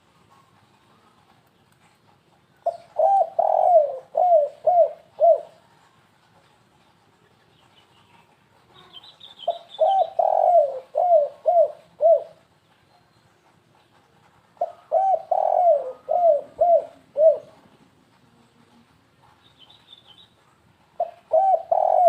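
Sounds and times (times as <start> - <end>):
dove cooing: 2.6 - 5.6, 8.7 - 12.5, 14.6 - 17.8, 21.0 - 22.0.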